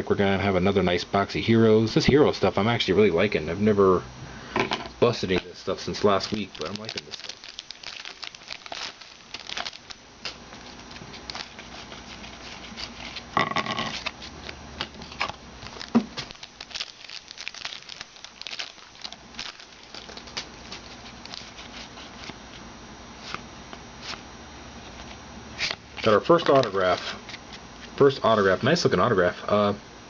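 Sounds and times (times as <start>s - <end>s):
trading cards clicking and rustling: 5.3s - 22.4s, 25.6s - 28.1s
wrappers crinkling: 5.6s - 22.4s, 25.6s - 27.4s.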